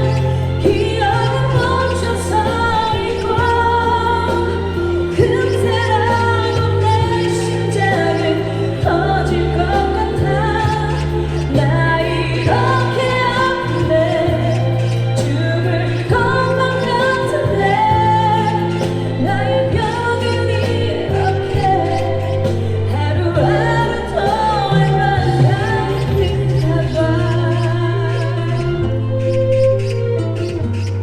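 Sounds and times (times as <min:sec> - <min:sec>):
backing track with bass notes: 0:00.0 - 0:31.0
woman singing a ballad: 0:00.0 - 0:31.0.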